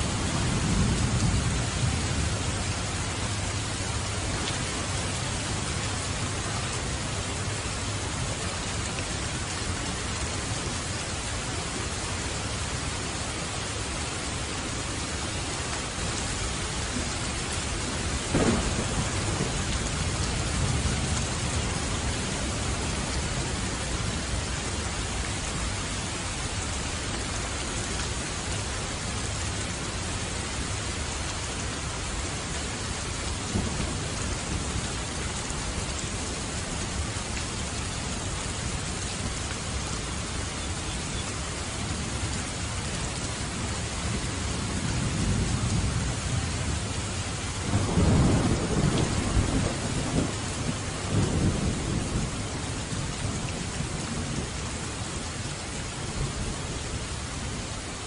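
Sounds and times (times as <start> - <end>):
thunder rumbling: 0.0 - 6.4, 16.9 - 24.4, 47.7 - 54.5
steady rain: 0.0 - 58.0.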